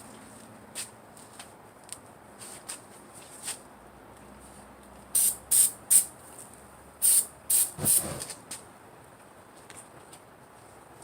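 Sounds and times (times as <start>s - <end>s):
short hissing bursts: 5.2s - 6.1s, 7.0s - 8.3s.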